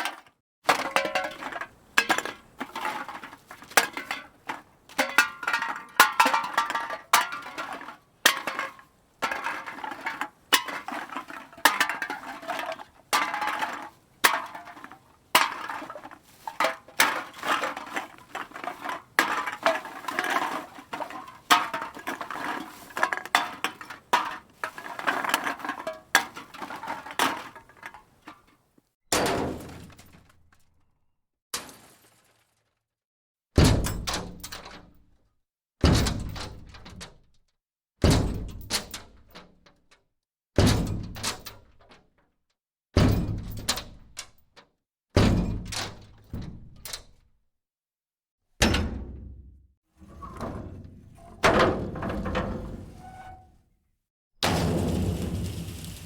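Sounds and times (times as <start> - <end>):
brittle objects crashing and breaking: 9.2 - 27.9, 54.4 - 56.0.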